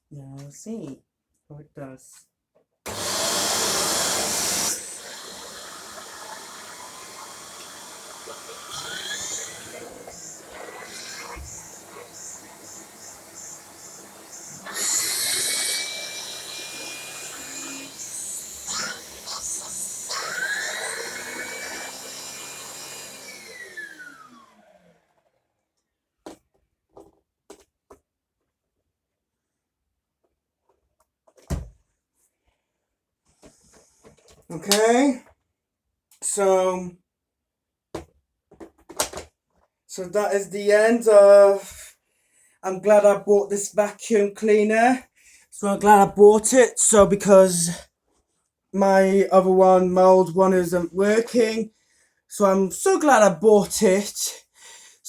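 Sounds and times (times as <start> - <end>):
vacuum cleaner running: 2.9 - 25.3.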